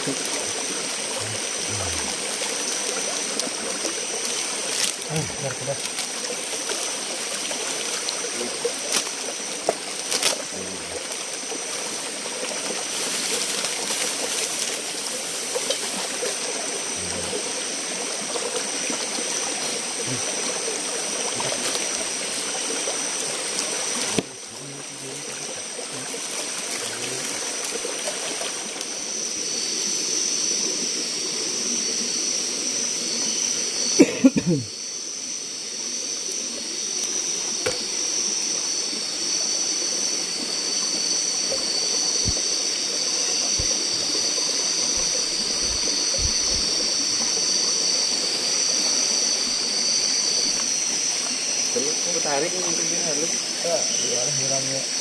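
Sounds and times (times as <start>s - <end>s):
forest stream rushing: 0.0s - 55.0s
insects buzzing: 0.0s - 55.0s.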